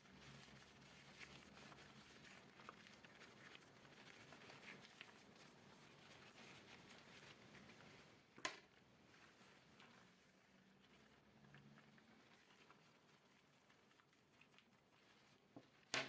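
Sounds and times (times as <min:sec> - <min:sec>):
cloth rubbing hard surface: 0:00.0 - 0:08.1.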